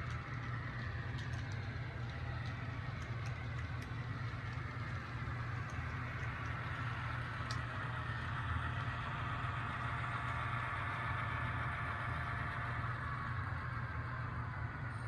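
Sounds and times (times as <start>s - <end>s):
model train diesel engine running: 0.0s - 15.0s.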